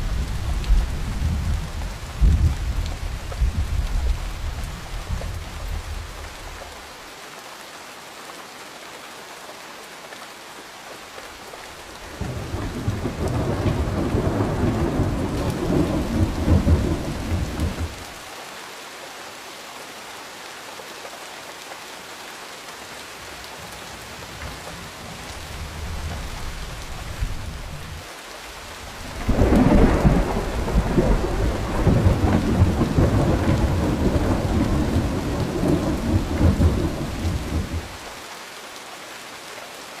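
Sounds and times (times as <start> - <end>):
steady rain falling: 0.0 - 40.0
thunder rumbling: 12.1 - 18.0, 29.0 - 38.0.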